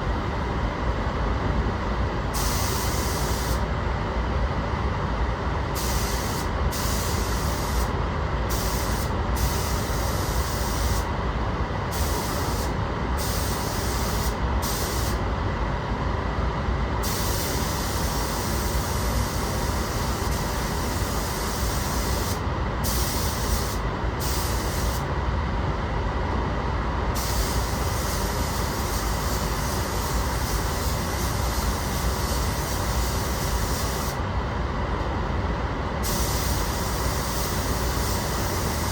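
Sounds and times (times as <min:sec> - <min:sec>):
loud rush of air: 0:00.0 - 0:38.9
paint spray gun hissing: 0:02.4 - 0:03.6, 0:05.8 - 0:07.9, 0:08.5 - 0:11.1, 0:11.9 - 0:15.2, 0:17.0 - 0:25.0, 0:27.2 - 0:34.2, 0:36.0 - 0:38.9.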